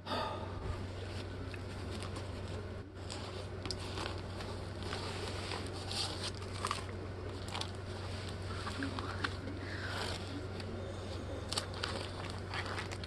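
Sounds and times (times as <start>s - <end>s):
steady low hum: 0.0s - 13.0s
canvas rustling: 1.0s - 10.6s.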